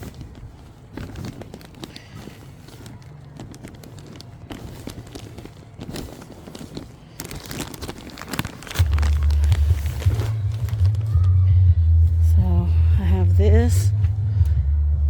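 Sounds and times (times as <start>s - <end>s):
potting mix and pots rustling: 0.0s - 11.4s
loud low rumble: 8.8s - 15.0s.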